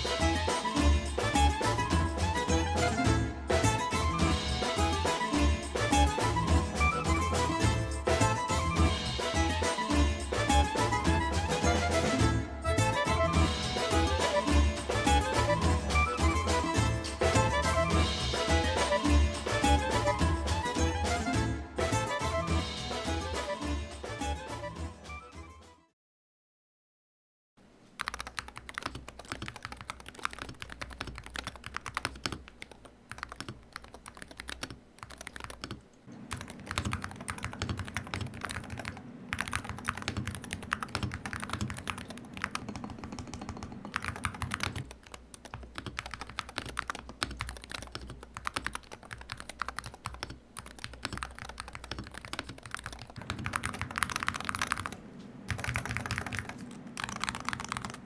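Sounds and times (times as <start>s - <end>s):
keyboard typing: 28.0s - 58.0s.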